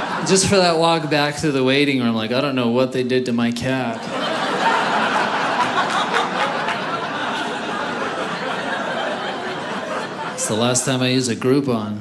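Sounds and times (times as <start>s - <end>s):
audience laughing: 0.0s - 1.2s, 3.8s - 11.4s.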